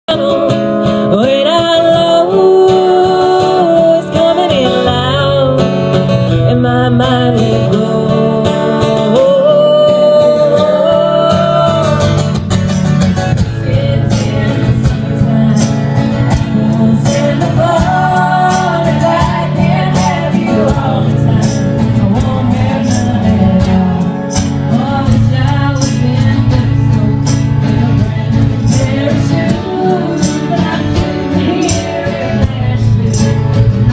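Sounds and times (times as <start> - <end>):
women singing: 0.1 - 12.4, 13.4 - 33.9
strummed acoustic guitar: 0.1 - 33.9
percussive beat: 11.8 - 33.9.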